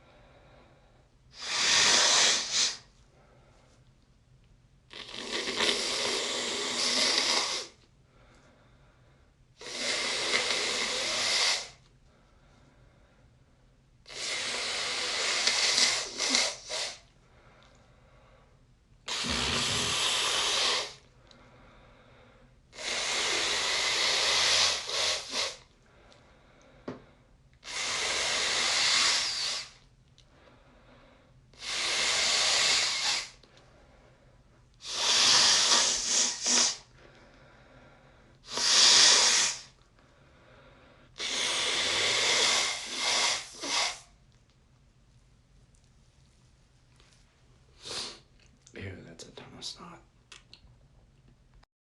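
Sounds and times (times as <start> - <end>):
person blowing nose: 1.3 - 2.9, 4.9 - 7.8, 9.6 - 11.8, 14.1 - 17.1, 19.1 - 21.0, 22.7 - 25.7, 27.6 - 29.9, 31.6 - 33.4, 34.8 - 36.9, 38.4 - 39.8, 41.2 - 44.2, 47.8 - 48.3.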